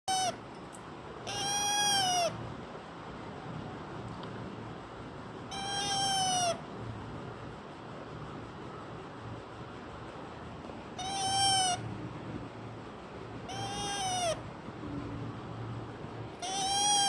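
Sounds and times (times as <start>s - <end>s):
meow-like calls: 1.2s - 2.4s, 5.5s - 6.6s, 13.5s - 14.4s, 16.4s - 17.0s.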